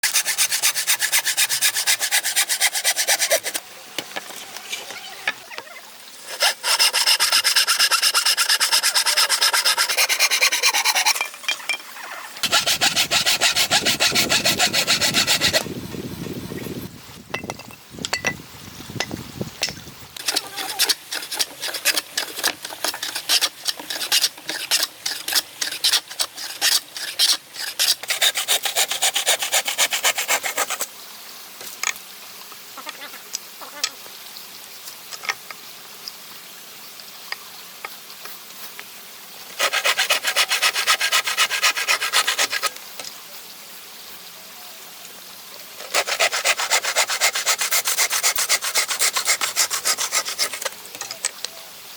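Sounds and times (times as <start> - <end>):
hand tool scraping wood: 0.0 - 3.6, 6.2 - 11.8, 12.4 - 15.7, 20.2 - 30.9, 39.6 - 42.7, 45.8 - 50.8.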